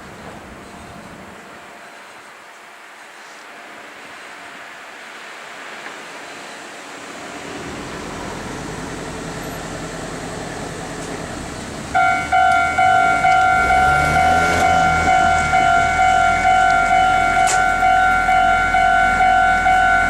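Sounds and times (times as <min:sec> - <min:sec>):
level crossing warning bell ringing: 0:09.0 - 0:20.0.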